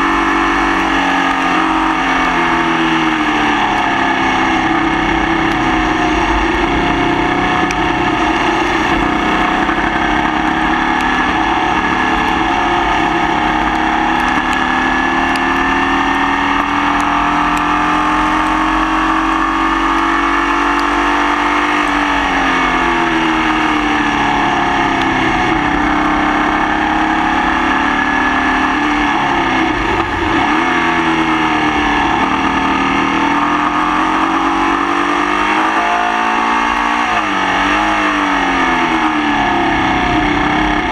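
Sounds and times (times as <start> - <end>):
race car engine misfiring: 0.1 - 36.8.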